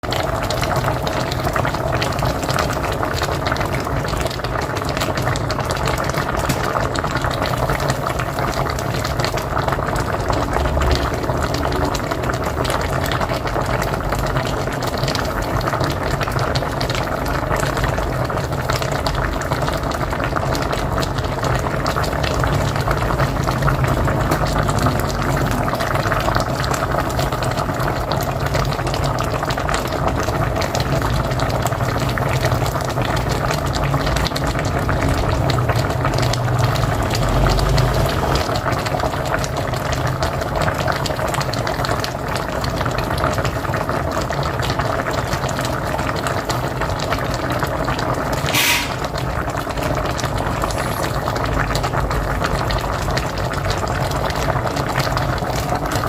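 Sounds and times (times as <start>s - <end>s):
pot boiling and bubbling: 0.0s - 56.0s.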